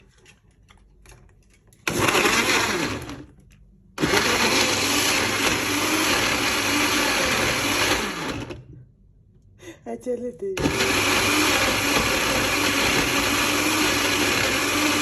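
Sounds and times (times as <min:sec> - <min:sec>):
electric blender running: 0:01.9 - 0:03.3, 0:04.0 - 0:08.7, 0:10.6 - 0:15.0.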